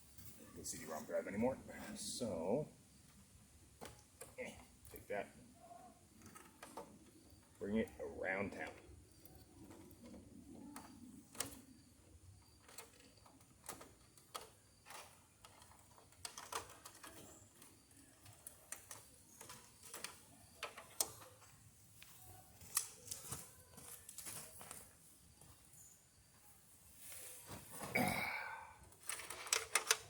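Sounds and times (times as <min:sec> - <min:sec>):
clicks and knocks handling computer parts: 0:03.8 - 0:25.5, 0:28.8 - 0:30.0.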